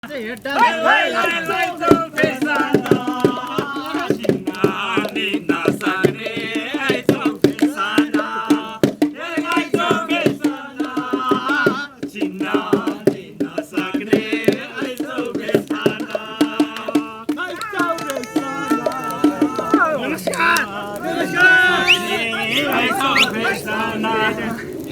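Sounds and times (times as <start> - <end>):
voices singing folk song: 0.0 - 24.9
steady percussion beat: 0.5 - 23.4.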